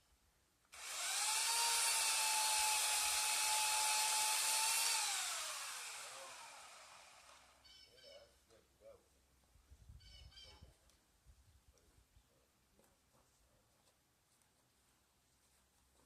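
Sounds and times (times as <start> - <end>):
power tool motor whining: 0.8 - 7.6.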